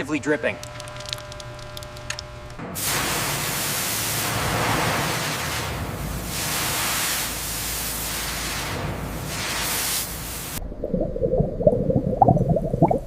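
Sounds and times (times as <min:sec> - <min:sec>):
loud steady hiss: 0:00.0 - 0:10.6.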